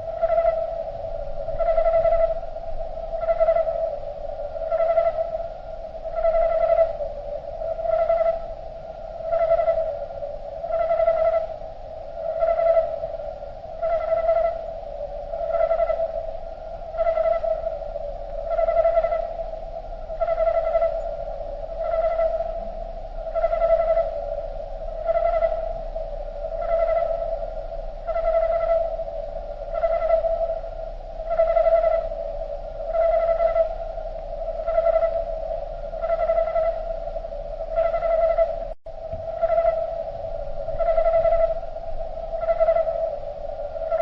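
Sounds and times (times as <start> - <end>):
slowed cricket chirping hum: 0.0 - 44.0.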